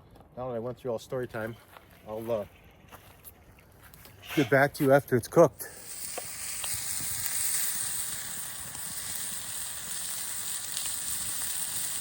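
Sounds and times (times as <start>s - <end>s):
meat sizzling in a pan: 5.7s - 12.0s.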